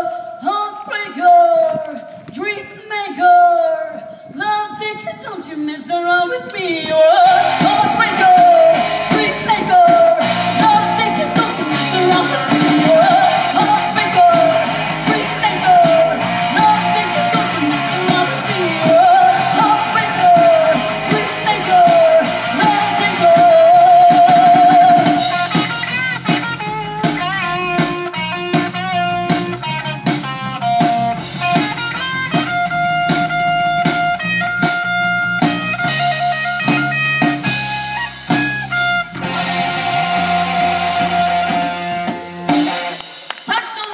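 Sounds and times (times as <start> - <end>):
person singing: 0.0 - 25.8
drums: 0.0 - 43.9
electric guitar: 6.4 - 43.9.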